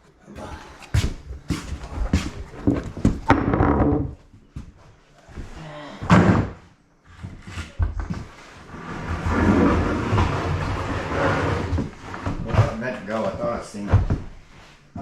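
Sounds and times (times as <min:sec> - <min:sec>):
construction knocks and thuds: 0:00.4 - 0:04.7.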